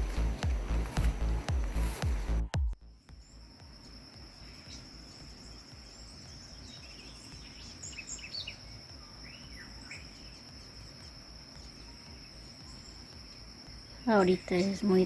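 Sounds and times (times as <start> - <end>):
insect high-pitched trill: 2.8 - 15.0
bird chirps: 3.0 - 15.0.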